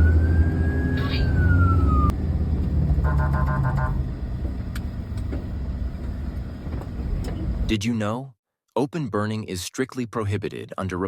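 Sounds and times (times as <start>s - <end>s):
fire truck siren wailing: 0.0s - 2.2s, 2.9s - 4.1s
engine rumble: 0.0s - 7.7s.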